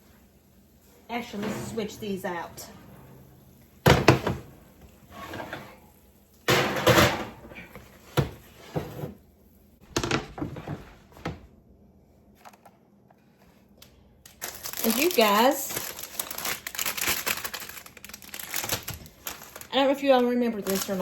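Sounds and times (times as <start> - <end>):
metal baking pans clattering: 1.2 - 2.7, 6.5 - 7.5
oven door: 1.2 - 5.8.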